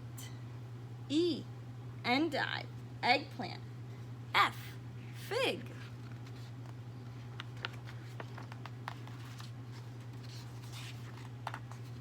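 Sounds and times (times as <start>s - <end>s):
steady low hum: 0.0s - 12.0s
paper pages rustling: 5.8s - 12.0s.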